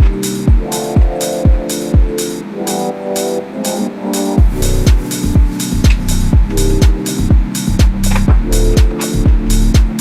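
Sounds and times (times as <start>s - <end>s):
kick drum hit: 0.0s - 2.2s, 4.4s - 10.0s
hi-hat hiss: 0.0s - 10.0s
sustained synth chords: 0.0s - 10.0s.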